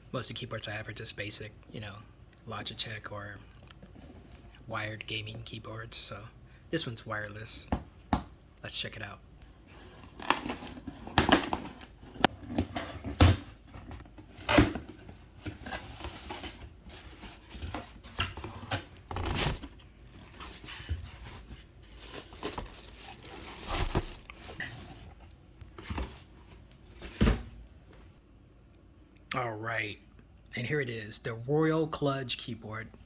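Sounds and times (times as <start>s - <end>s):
packaging rustling and scraping: 9.6s - 27.5s
packaging knocks and thuds: 10.1s - 25.0s.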